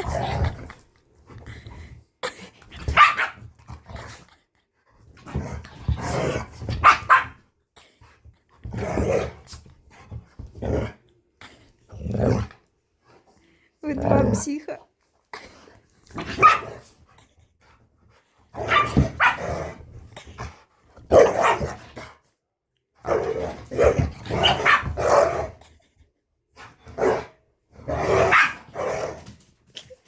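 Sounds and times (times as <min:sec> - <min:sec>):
dogs growling: 0:05.2 - 0:06.7, 0:10.4 - 0:12.7.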